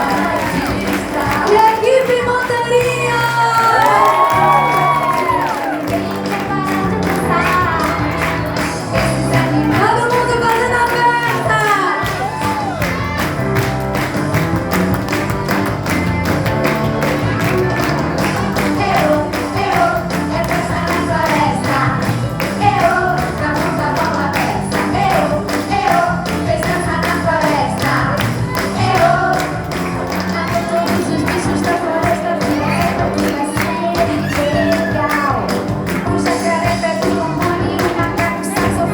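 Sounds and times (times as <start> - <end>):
fast percussion beat: 0.0 - 38.9
person singing: 18.2 - 38.9.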